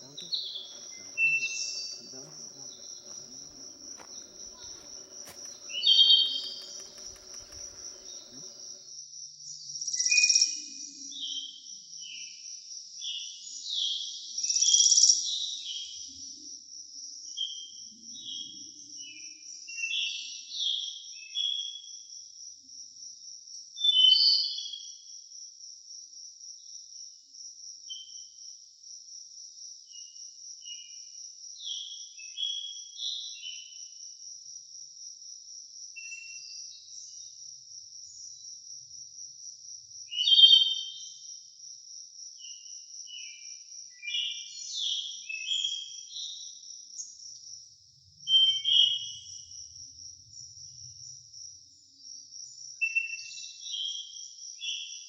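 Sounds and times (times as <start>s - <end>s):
forest birds chirping: 0.0s - 8.8s
insect trill: 0.0s - 8.8s.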